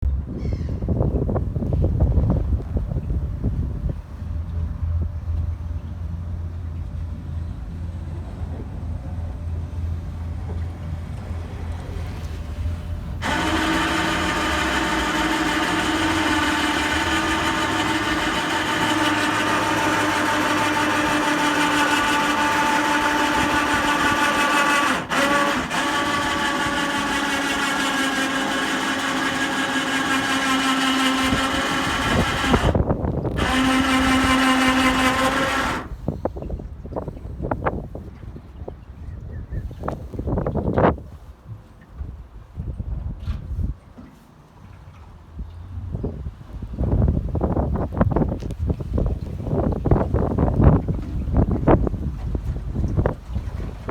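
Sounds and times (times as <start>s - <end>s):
ferry engine drone: 2.5s - 37.2s
mechanical whine: 11.2s - 36.2s.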